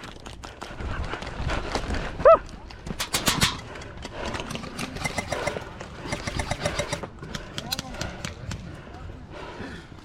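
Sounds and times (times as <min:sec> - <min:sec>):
footsteps of person running: 0:00.0 - 0:03.0.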